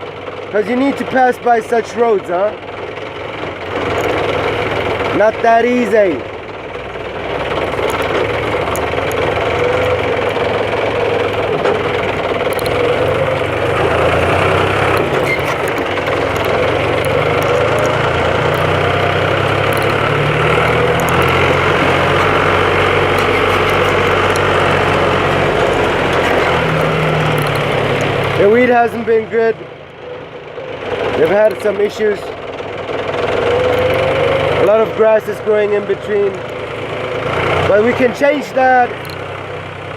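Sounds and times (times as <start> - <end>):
tractor diesel engine running: 0.0 - 39.9
faint clicks and rattles: 2.9 - 5.2, 6.6 - 25.0, 25.6 - 28.8.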